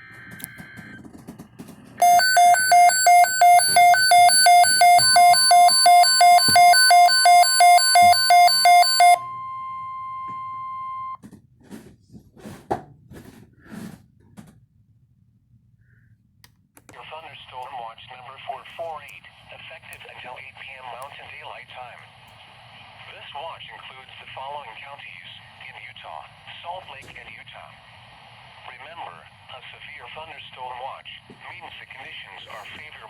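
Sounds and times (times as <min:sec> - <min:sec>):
steady warning tone: 0:02.0 - 0:11.2
weather radio alarm beeping: 0:02.0 - 0:11.2.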